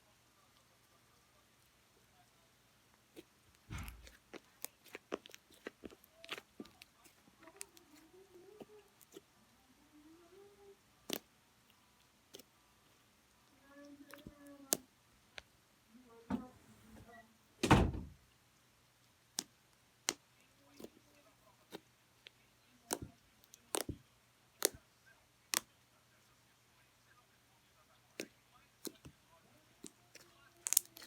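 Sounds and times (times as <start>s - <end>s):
faint voice: 5.6s - 11.3s, 13.4s - 14.9s, 15.9s - 17.4s
heavy thump: 17.6s - 18.1s.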